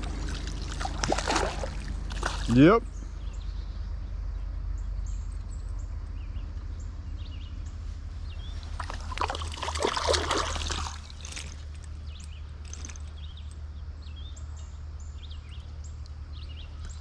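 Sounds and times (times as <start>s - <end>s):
creek water rushing: 0.0s - 2.8s, 8.5s - 11.9s
small birds chirping: 0.0s - 17.0s.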